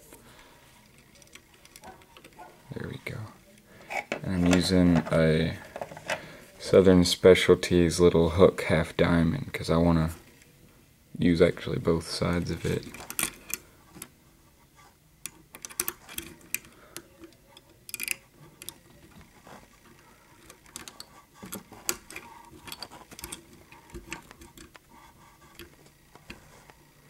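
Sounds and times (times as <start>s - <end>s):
metallic clicks and scrapes in lock: 12.8s - 13.6s, 15.2s - 16.8s, 17.6s - 19.2s, 20.4s - 24.8s.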